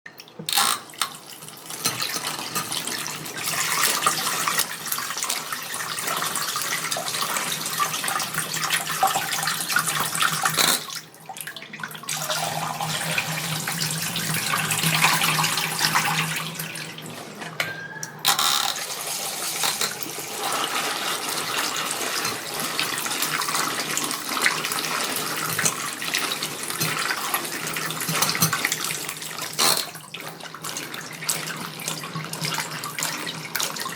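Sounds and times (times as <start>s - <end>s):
tap water splashing in sink: 0.2s - 33.9s.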